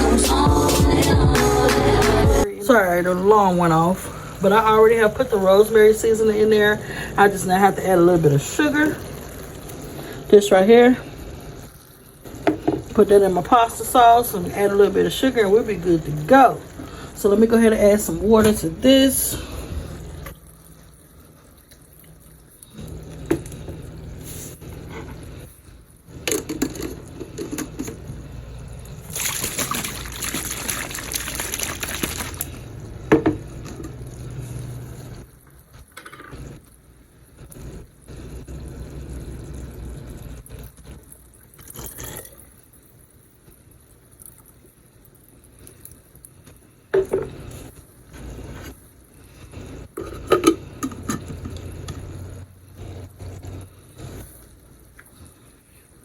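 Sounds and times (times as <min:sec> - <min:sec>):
water pouring into pot: 0:28.6 - 0:35.4, 0:37.5 - 0:46.3.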